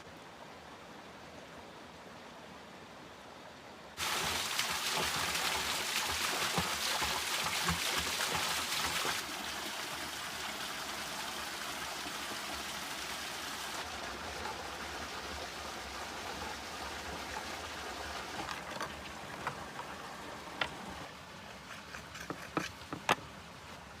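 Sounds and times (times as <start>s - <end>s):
stream water running: 0.0s - 24.0s.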